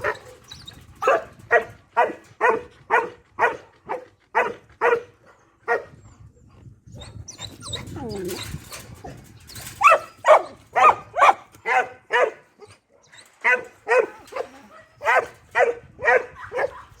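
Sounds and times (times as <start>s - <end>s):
dog barking: 1.0s - 5.1s, 9.8s - 12.4s, 13.4s - 17.0s.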